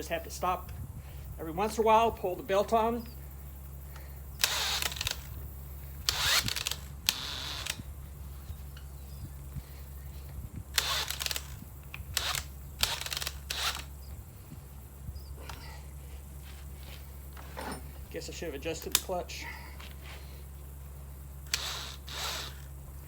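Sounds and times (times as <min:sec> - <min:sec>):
power drill bursts: 0:04.4 - 0:05.3, 0:06.1 - 0:07.8, 0:10.8 - 0:13.9, 0:21.4 - 0:22.7
drill clutch ratcheting: 0:04.4 - 0:05.4, 0:06.0 - 0:07.9, 0:10.7 - 0:14.1, 0:21.4 - 0:22.8.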